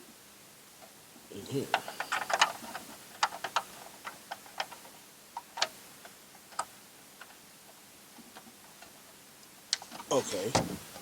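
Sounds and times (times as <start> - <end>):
small plastic parts clicking: 1.7 - 7.4.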